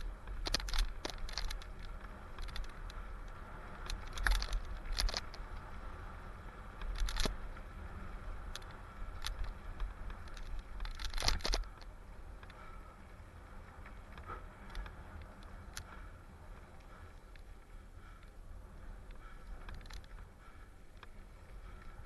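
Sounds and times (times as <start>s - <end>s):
bike chain rattling: 0.0s - 12.9s, 19.0s - 22.0s
wind rumble on microphone: 0.0s - 22.0s.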